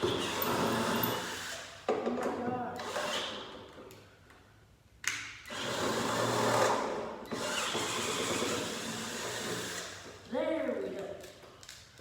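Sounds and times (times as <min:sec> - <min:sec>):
whirring rattling tool noise: 0:00.0 - 0:01.8, 0:05.4 - 0:10.3.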